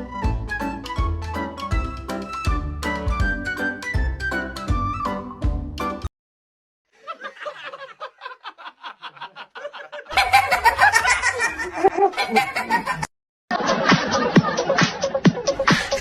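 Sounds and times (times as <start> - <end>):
person laughing: 7.0 - 16.0.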